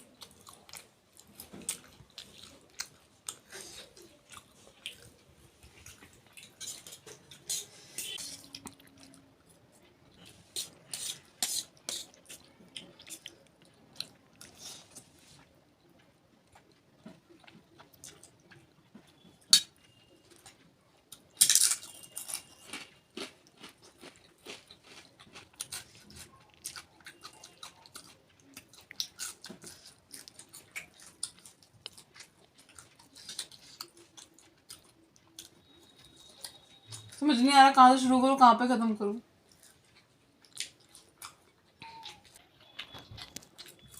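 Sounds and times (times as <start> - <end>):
chewing and biting: 0.0 - 37.2, 39.5 - 43.9
cutlery scraping a plate: 6.6 - 8.4, 10.6 - 12.1.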